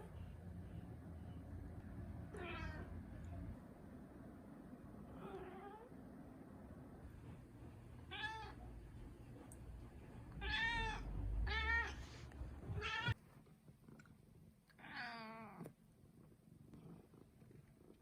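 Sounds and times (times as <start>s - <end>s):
cat meowing: 2.3s - 2.9s, 8.1s - 8.6s, 10.4s - 13.2s, 14.8s - 15.6s.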